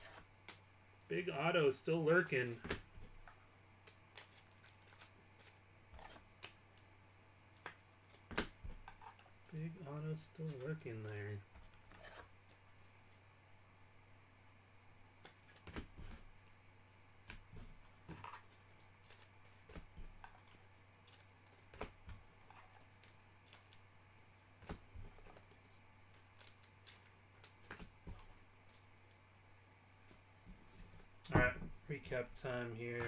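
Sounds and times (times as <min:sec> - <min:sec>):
low steady hum: 0:00.0 - 0:33.0.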